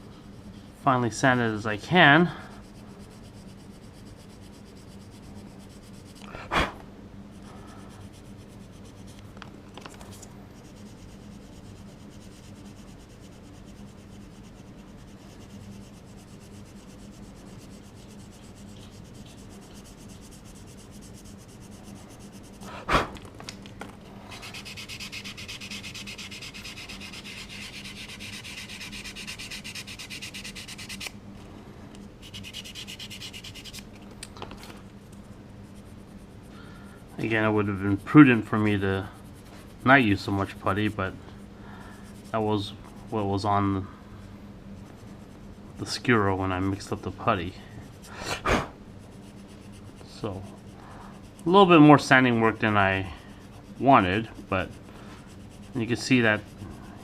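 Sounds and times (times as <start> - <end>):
hand sanding rasping: 2.1 - 6.2, 7.7 - 9.2, 10.6 - 22.7, 24.2 - 31.2, 32.2 - 33.9, 35.7 - 43.4, 49.0 - 57.0.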